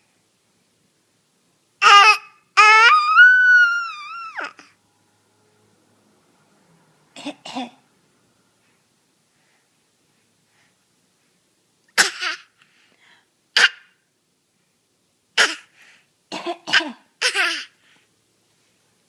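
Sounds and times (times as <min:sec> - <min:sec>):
person coughing: 0:16.3 - 0:17.6.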